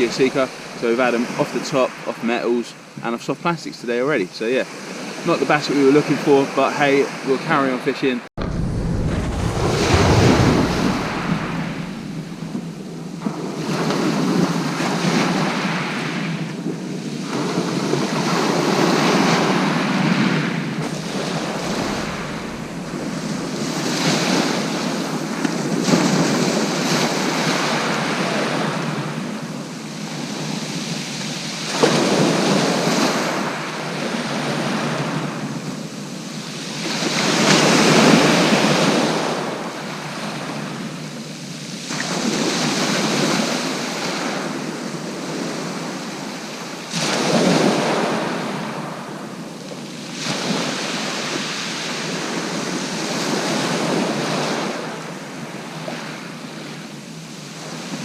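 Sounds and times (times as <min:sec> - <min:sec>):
sea waves breaking: 0:00.0 - 0:02.2, 0:04.6 - 0:35.2
wind buffeting microphone: 0:08.4 - 0:13.5, 0:20.5 - 0:25.8.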